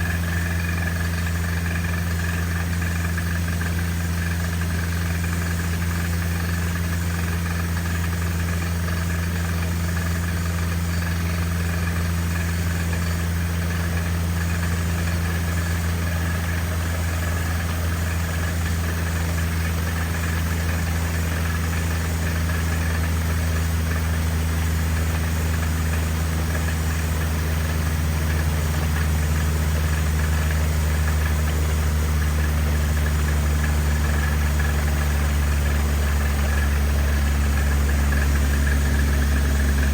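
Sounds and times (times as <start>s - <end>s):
drilling rig engine humming: 9.1s - 39.9s.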